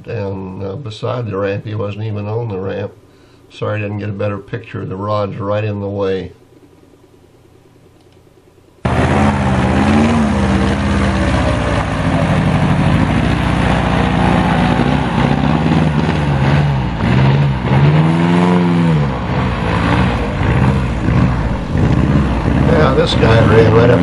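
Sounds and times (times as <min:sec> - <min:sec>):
airboat engine and propeller: 0:08.9 - 0:24.0.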